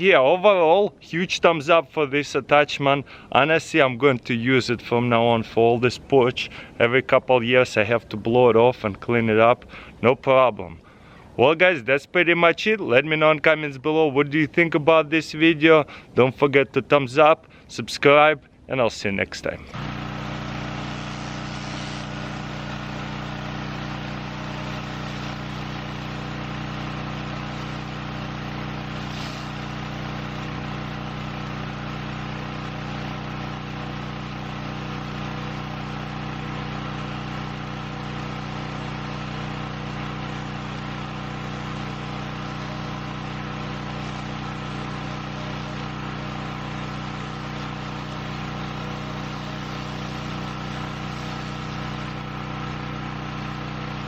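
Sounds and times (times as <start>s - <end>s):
pressure washer engine running: 3.0s - 3.2s, 6.0s - 6.7s, 19.6s - 54.0s
spray hissing: 19.8s - 31.0s, 48.0s - 52.0s.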